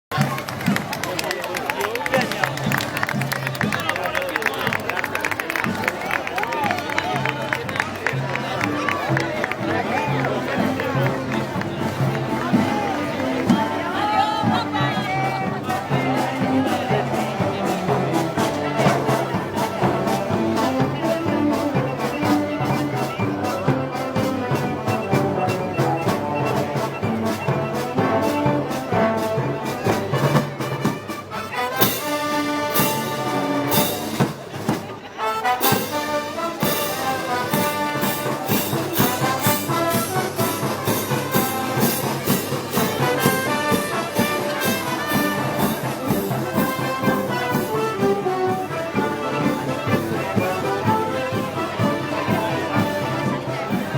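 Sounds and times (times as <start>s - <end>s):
brass band playing: 1.9s - 53.9s.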